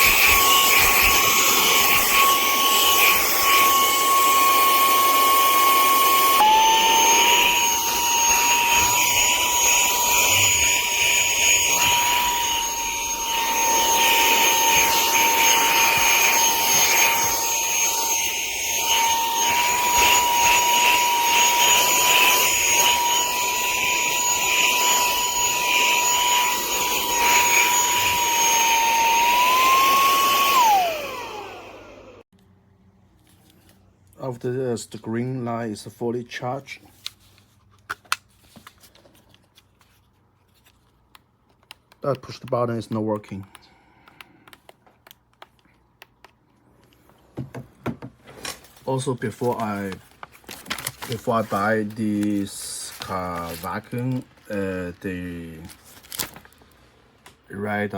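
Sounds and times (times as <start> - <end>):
handheld vacuum motor whining: 0.0 - 32.3, 49.0 - 56.4.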